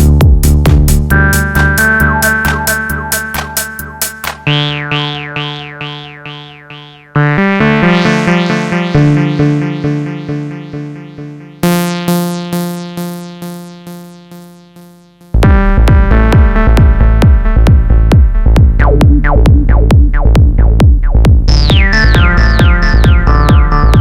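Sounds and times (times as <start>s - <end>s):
kick drum beat: 0.0s - 2.8s, 15.4s - 24.0s
hi-hats: 0.0s - 4.6s
repeating synth chords: 0.0s - 24.0s
synth bass: 0.0s - 24.0s
falling high synth figure: 2.2s - 7.3s.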